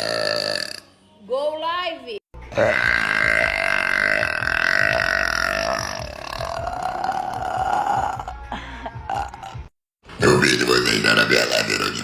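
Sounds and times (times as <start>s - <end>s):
girl burping: 0.0s - 0.9s, 2.5s - 9.7s.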